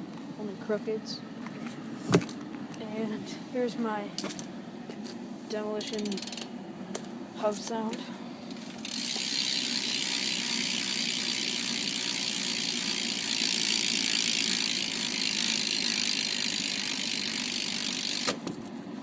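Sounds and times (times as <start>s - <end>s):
bike hub ratcheting buzz: 5.8s - 6.6s, 8.8s - 18.4s.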